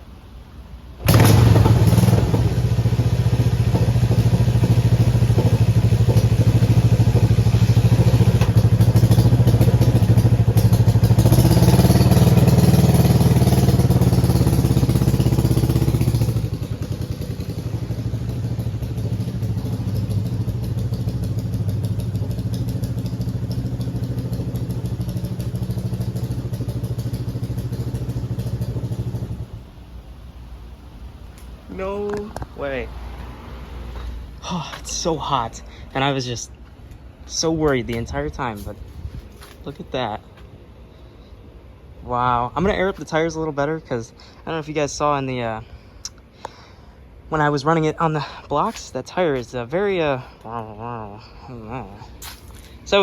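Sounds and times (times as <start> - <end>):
motorcycle engine running: 1.0 - 29.8, 50.2 - 53.0.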